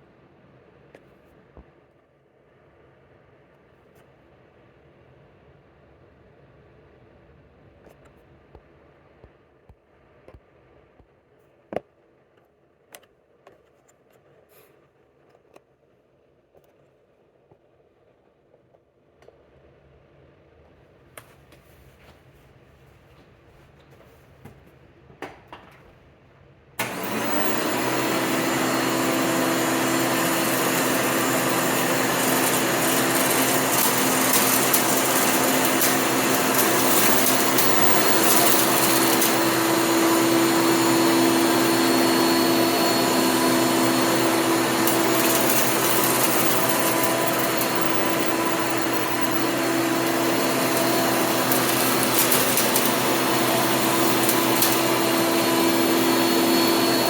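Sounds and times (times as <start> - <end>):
vacuum cleaner motor humming: 26.8 - 57.0.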